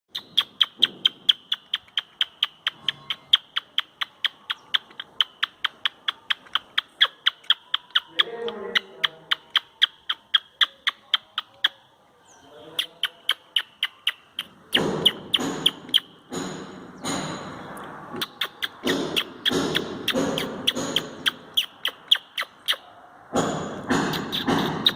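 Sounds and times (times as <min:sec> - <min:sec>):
squirrel alarm chatter: 0:00.1 - 0:16.5, 0:18.1 - 0:22.9, 0:23.9 - 0:24.9.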